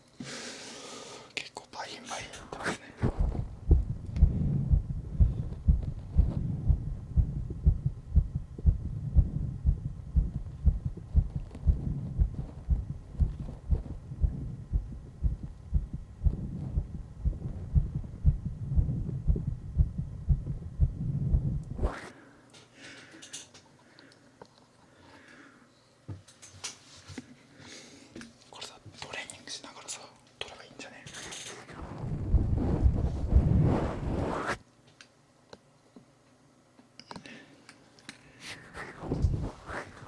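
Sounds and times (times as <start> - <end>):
heartbeat: 3.0 - 21.9, 31.8 - 34.4, 39.0 - 40.0.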